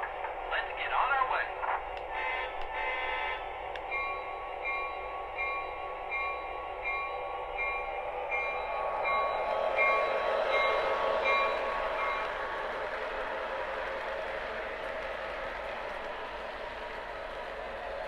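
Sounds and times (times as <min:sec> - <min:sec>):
locomotive bell ringing: 0:03.2 - 0:13.2.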